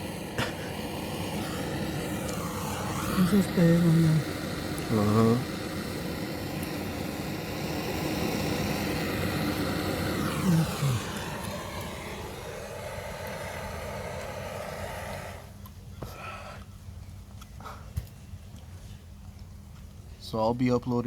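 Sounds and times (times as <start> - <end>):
torch flame hissing: 0.0 - 16.6.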